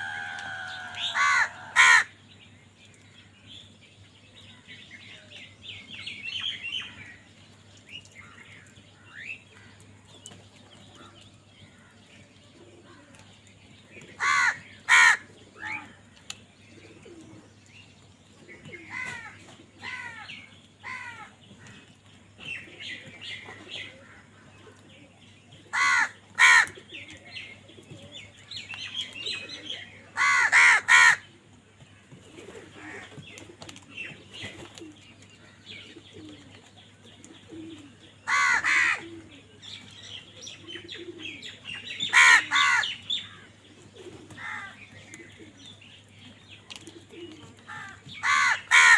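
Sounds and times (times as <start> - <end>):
crows cawing: 0.0 - 2.2, 14.2 - 15.9, 18.9 - 21.8, 25.7 - 26.8, 30.2 - 31.3, 38.2 - 39.2, 42.1 - 43.5, 44.4 - 44.8, 47.7 - 48.9
low bird calls: 0.0 - 3.8, 6.1 - 48.9.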